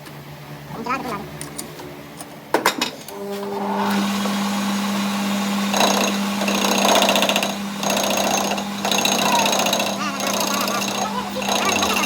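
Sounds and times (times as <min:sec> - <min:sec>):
machine motor humming: 0:03.1 - 0:12.0
power tool rattling: 0:03.5 - 0:12.0.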